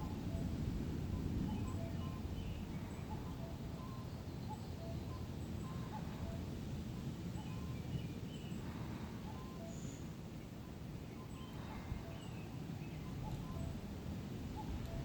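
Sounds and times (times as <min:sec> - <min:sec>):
faint bird chirps: 0:00.0 - 0:13.8, 0:14.4 - 0:15.0
low rumble of wind: 0:00.0 - 0:15.0.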